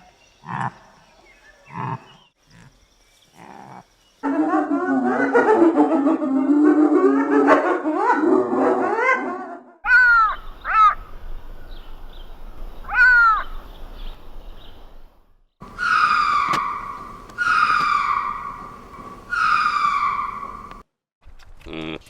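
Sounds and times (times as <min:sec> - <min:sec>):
short rising and falling calls: 0:15.6 - 0:20.8
wavering animal call: 0:15.6 - 0:20.8.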